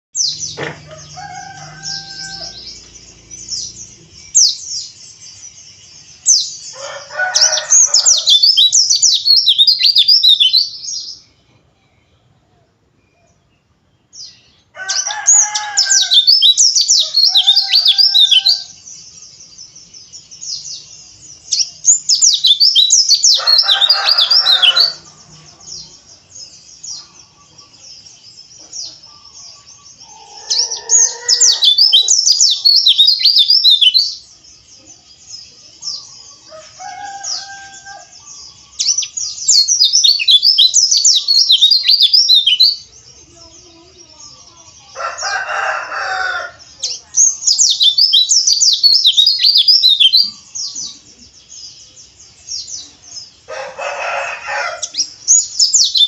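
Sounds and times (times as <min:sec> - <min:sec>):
lower-pitched bird calls: 0:00.2 - 0:12.3, 0:13.1 - 0:51.3
birds twittering song: 0:00.2 - 0:56.0.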